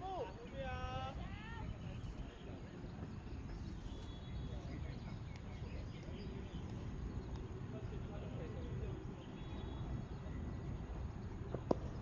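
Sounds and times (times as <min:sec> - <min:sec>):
wind rumble on microphone: 0:00.0 - 0:12.0.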